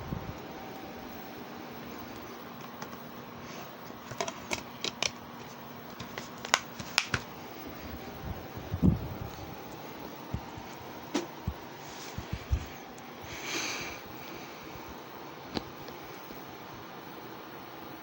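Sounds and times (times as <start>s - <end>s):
faint hum: 0.0s - 18.0s
steady hiss: 5.3s - 18.0s.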